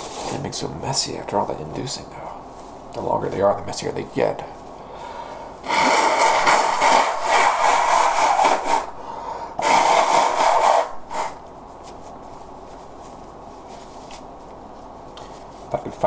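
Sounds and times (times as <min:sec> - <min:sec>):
man blowing his nose: 0:05.6 - 0:09.0, 0:09.6 - 0:11.4.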